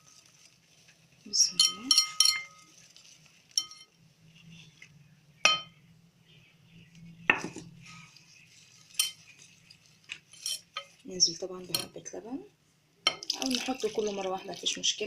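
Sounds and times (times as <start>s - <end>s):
metal utensil clinking on bowl: 1.4s - 2.9s, 3.5s - 4.0s, 8.9s - 11.0s, 11.7s - 12.0s.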